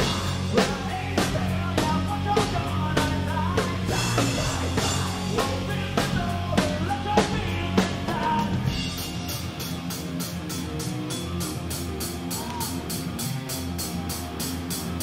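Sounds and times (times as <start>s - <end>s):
drum kit beat: 0.0s - 15.0s
electric guitars and bass: 0.0s - 15.0s.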